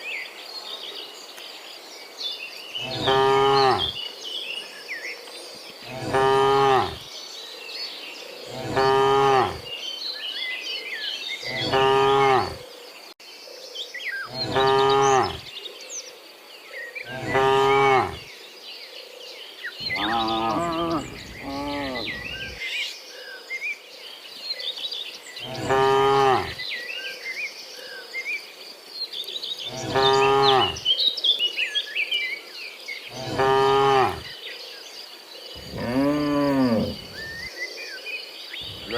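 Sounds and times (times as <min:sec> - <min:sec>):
birds chirping: 0:02.8 - 0:04.0, 0:05.5 - 0:07.1, 0:08.4 - 0:09.8, 0:11.4 - 0:12.6, 0:14.2 - 0:15.5, 0:17.0 - 0:18.3, 0:19.7 - 0:22.7, 0:29.6 - 0:30.9, 0:33.1 - 0:34.3, 0:35.5 - 0:37.6, 0:38.5 - 0:38.9
cattle mooing: 0:08.5 - 0:09.6, 0:11.5 - 0:12.6, 0:14.3 - 0:15.4, 0:17.1 - 0:18.2, 0:19.8 - 0:22.6, 0:29.7 - 0:30.8, 0:33.2 - 0:34.2, 0:35.6 - 0:37.4, 0:38.6 - 0:38.9
insects buzzing: 0:19.8 - 0:22.6, 0:35.5 - 0:37.5, 0:38.6 - 0:38.9.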